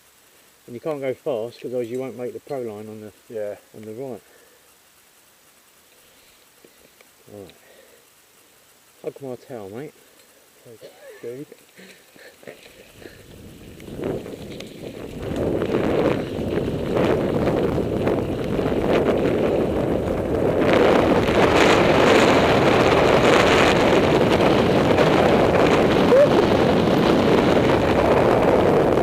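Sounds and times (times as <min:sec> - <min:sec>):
wind rushing over microphone: 0:12.9 - 0:29.0.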